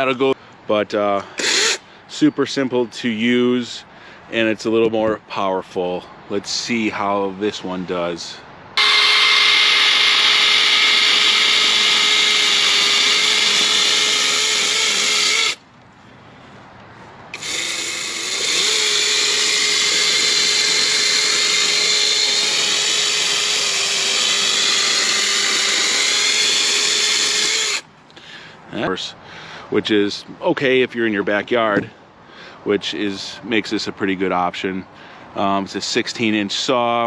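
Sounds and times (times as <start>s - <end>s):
electric chainsaw whining: 1.4s - 1.8s, 8.8s - 15.6s, 17.3s - 27.8s.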